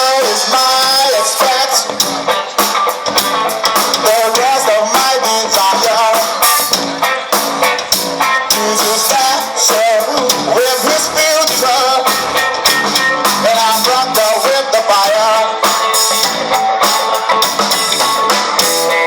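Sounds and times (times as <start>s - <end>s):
person singing: 0.0s - 2.5s, 3.7s - 7.4s, 8.2s - 19.0s
rock band guitar and drums: 0.0s - 19.0s.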